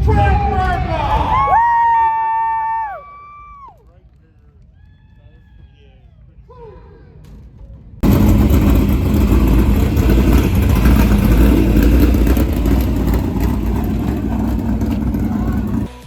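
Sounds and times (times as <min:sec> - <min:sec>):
race car engines at speed: 0:08.0 - 0:16.0.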